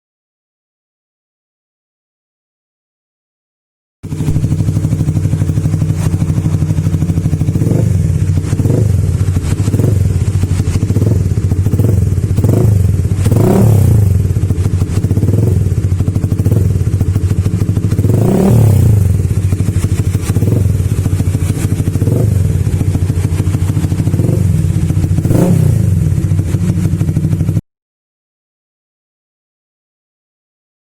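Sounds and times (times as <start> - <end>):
motorcycle engine revving: 4.0 - 27.6.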